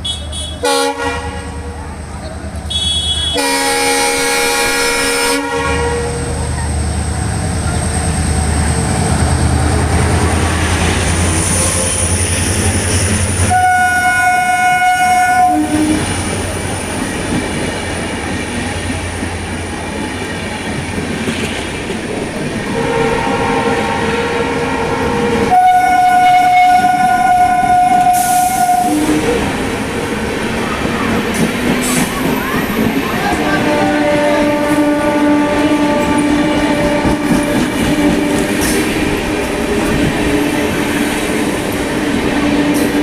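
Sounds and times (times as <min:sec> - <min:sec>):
locomotive twin-tone horn: 0:00.0 - 0:01.8, 0:02.6 - 0:06.6, 0:13.4 - 0:16.1, 0:22.6 - 0:29.7, 0:33.2 - 0:38.8
train rumbling and rattling: 0:00.0 - 0:43.0.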